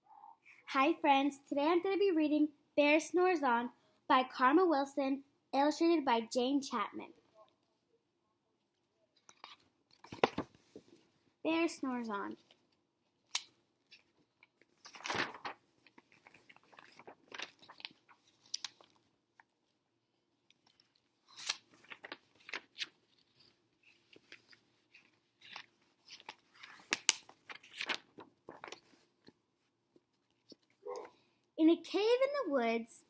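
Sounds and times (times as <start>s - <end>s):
book pages rustling: 9.2s - 11.1s, 12.3s - 19.8s, 20.5s - 31.2s.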